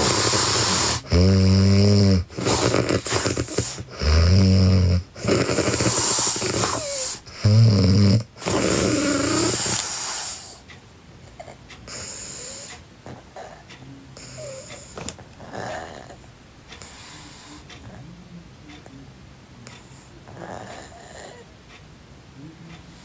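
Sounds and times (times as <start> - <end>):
breathy exhale: 0.0 - 1.2, 8.4 - 10.6, 16.8 - 17.8
girl snoring: 0.0 - 10.6, 11.9 - 16.2, 20.3 - 21.5.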